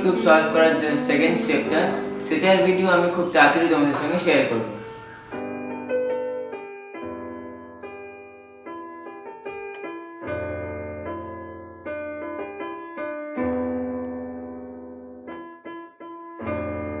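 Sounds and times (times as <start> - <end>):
slow piano melody: 0.0 - 17.0.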